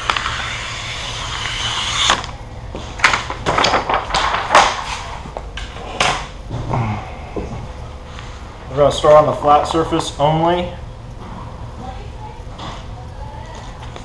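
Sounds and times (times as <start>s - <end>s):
vinyl film hissing: 0.0s - 2.4s
vinyl film rustling and crinkling: 2.7s - 5.4s.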